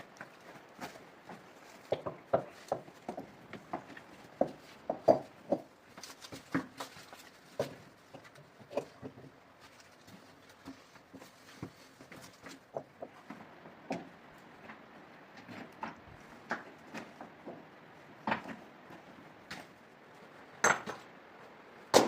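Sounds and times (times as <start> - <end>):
irregular knocks and taps: 0.2 - 5.7, 12.4 - 14.2.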